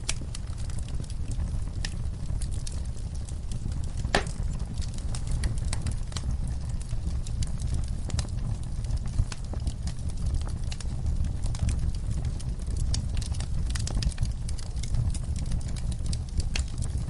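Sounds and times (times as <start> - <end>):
campfire crackling and popping: 0.0 - 17.0
steady low rumble: 0.0 - 17.0.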